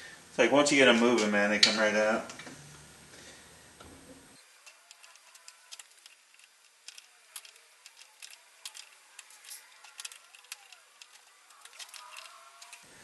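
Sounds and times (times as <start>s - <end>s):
pliers clicking on metal: 4.6s - 12.9s.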